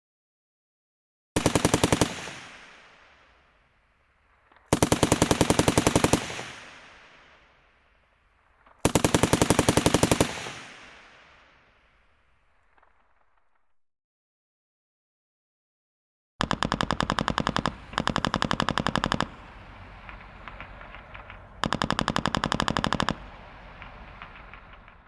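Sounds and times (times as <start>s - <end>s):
machine gun automatic fire: 1.4s - 3.6s, 4.4s - 7.6s, 8.5s - 11.6s, 16.4s - 25.0s.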